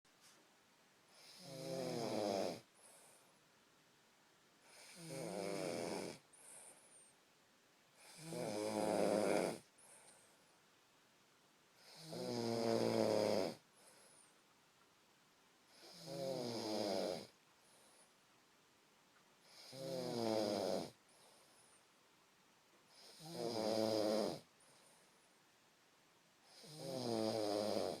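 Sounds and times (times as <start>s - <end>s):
person snoring: 1.1s - 3.0s, 4.6s - 6.6s, 8.0s - 9.7s, 11.8s - 13.6s, 15.7s - 17.4s, 19.4s - 21.0s, 22.9s - 24.5s, 26.5s - 28.0s.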